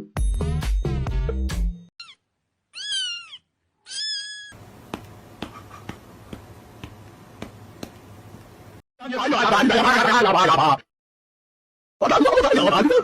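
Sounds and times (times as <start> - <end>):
cat meowing: 2.0 - 4.6
faint steady hiss: 4.6 - 8.8.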